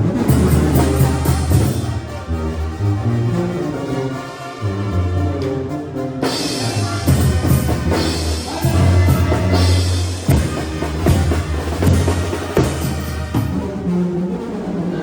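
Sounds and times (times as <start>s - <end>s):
dramatic orchestral music: 0.0s - 15.0s
heavy drum hits: 6.5s - 13.9s.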